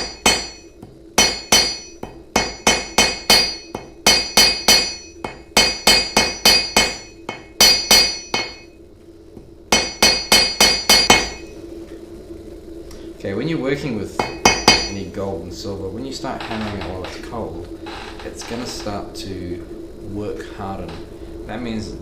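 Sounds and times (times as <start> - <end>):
hammer tapping on metal: 0.0 - 8.7, 9.4 - 11.5, 14.2 - 15.0.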